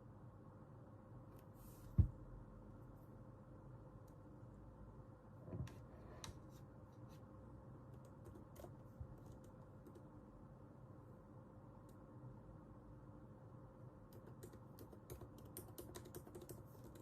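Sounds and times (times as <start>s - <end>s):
faint room hum: 0.0s - 17.0s
computer keyboard keystrokes: 8.0s - 10.1s, 14.1s - 17.0s.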